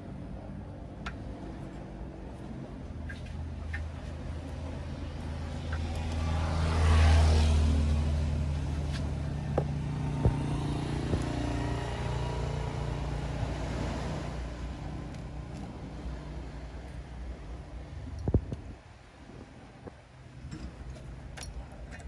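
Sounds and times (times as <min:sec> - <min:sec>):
vehicle engine passing: 0:03.1 - 0:18.2.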